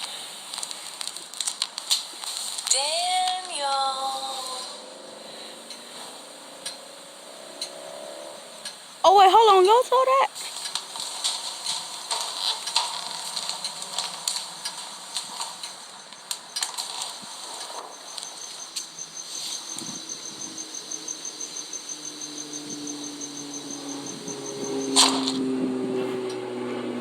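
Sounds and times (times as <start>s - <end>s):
insect chirping: 0.6s - 25.4s
low steady drone: 3.8s - 9.0s, 20.0s - 27.0s.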